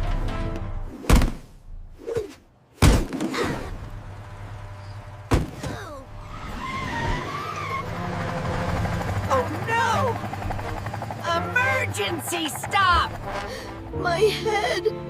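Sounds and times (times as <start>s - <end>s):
cartoon impact thuds: 1.0s - 1.6s, 2.8s - 3.7s, 5.3s - 5.9s.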